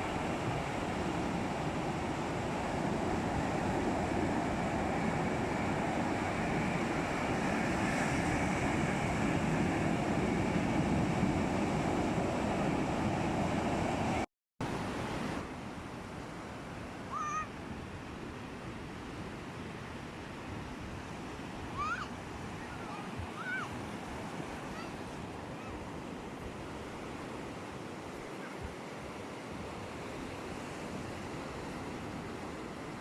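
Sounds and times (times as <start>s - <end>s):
sea surf washing: 0.0s - 33.0s.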